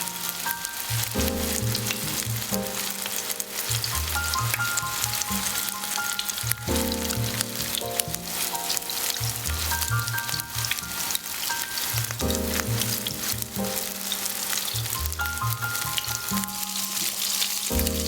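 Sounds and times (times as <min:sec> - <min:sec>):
food sizzling in a pan: 0:00.0 - 0:18.0
soft plucked background music: 0:00.0 - 0:18.0.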